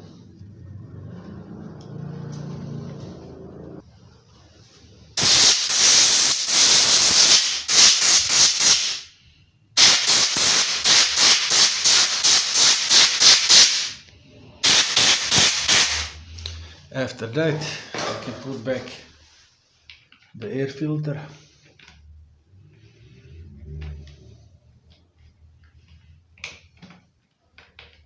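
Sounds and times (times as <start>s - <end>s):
compressed air blow gun hissing: 5.2s - 9.0s, 9.8s - 13.9s, 14.6s - 16.2s.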